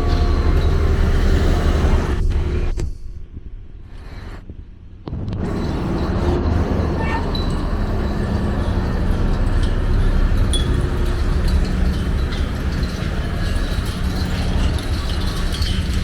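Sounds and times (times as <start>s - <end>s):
low rumble of heavy machinery: 0.0s - 16.0s
metallic clinks and knocks: 7.0s - 16.0s.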